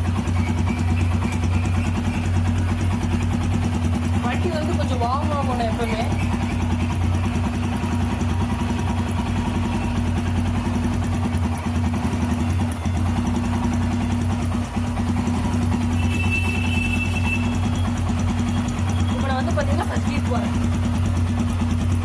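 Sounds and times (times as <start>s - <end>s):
motorcycle engine idling: 0.0s - 22.0s.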